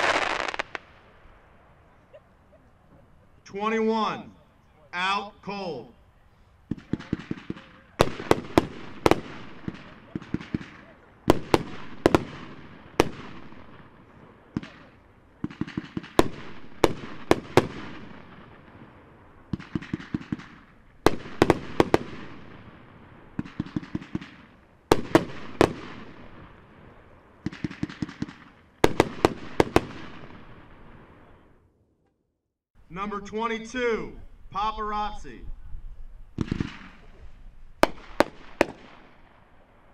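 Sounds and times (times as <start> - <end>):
fireworks shells bursting: 0.0 - 1.1.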